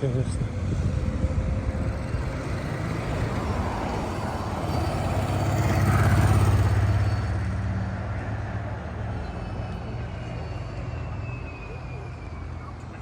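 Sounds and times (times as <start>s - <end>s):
street traffic noise: 0.0s - 13.0s
vehicle driving past: 0.5s - 12.4s.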